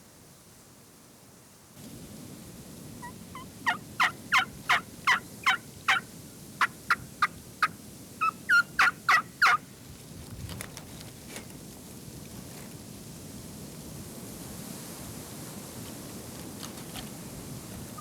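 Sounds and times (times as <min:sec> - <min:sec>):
turkey yelping: 0:03.0 - 0:06.0, 0:06.6 - 0:09.6.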